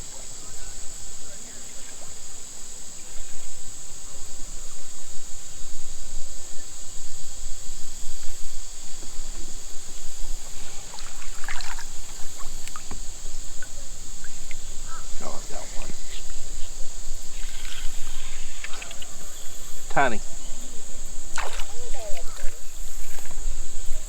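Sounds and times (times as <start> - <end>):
insects droning: 0.0 - 24.0
water lapping around a boat: 8.1 - 24.0.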